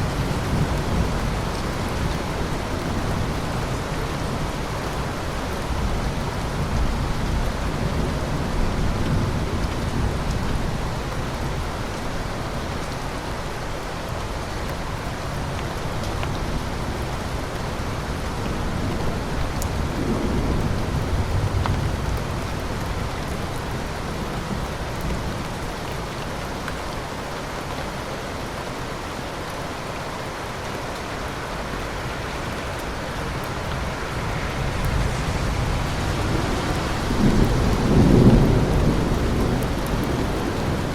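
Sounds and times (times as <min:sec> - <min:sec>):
steady rain falling: 0:00.0 - 0:40.9
thunder rumbling: 0:31.3 - 0:40.9.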